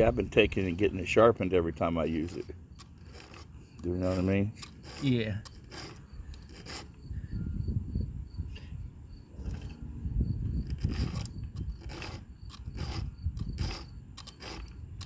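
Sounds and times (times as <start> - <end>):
file rasping on chainsaw chain: 1.7 - 7.0, 10.6 - 15.0.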